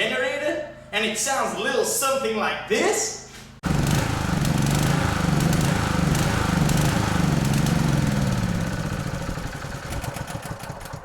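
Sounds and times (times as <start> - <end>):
generator engine unsteady idle: 3.6 - 11.0.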